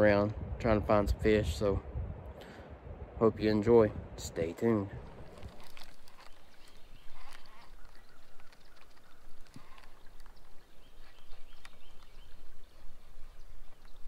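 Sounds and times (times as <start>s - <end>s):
bird calls: 5.4s - 14.0s.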